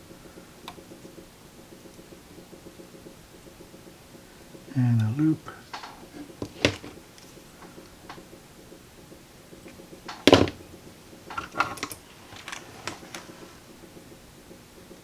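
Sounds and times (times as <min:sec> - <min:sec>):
hand tools and wire clicking: 0:05.0 - 0:08.2, 0:09.6 - 0:13.4.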